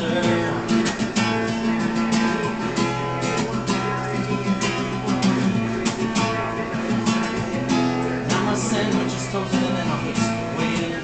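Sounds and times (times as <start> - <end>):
acoustic guitar strumming: 0.0 - 11.0
person singing: 8.3 - 11.0.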